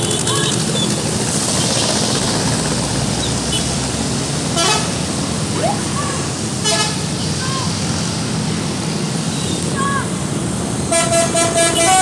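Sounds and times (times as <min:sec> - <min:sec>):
road traffic noise: 0:00.0 - 0:12.0
vehicle horn toots: 0:10.9 - 0:12.0.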